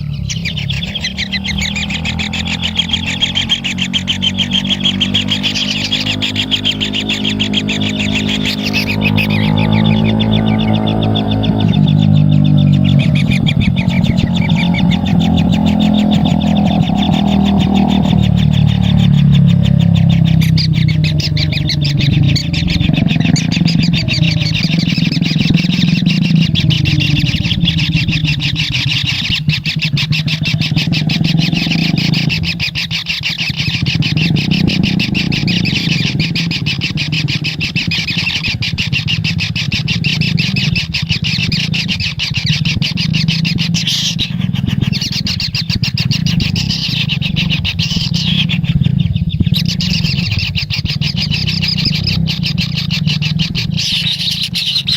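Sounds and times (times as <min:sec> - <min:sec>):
bird chicks buzzing churr: 0:00.0 - 0:54.9
steady low hum: 0:00.0 - 0:54.9.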